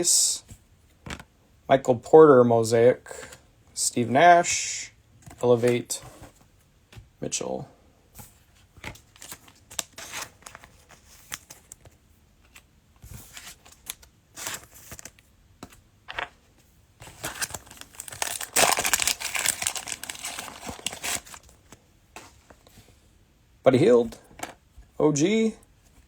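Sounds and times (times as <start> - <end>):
cellophane wrapper crinkling: 17.0 - 21.8.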